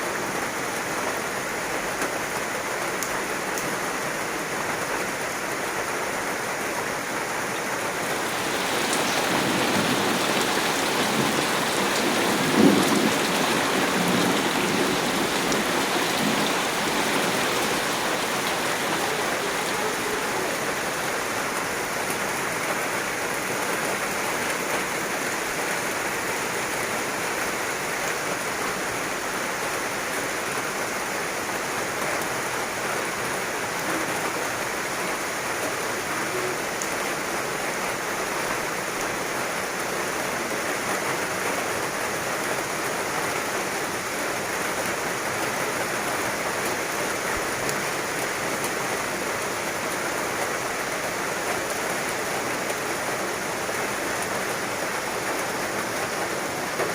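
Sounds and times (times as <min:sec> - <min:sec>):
heavy rain: 0:00.0 - 0:56.9
thunder rumble and crack: 0:08.0 - 0:21.0.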